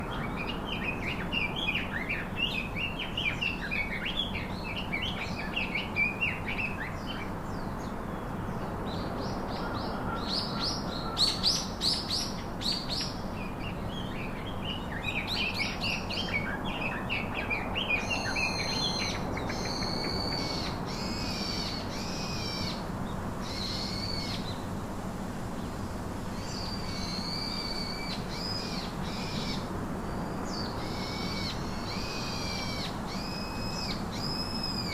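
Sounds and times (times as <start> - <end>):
small birds chirping: 25.6 - 34.9.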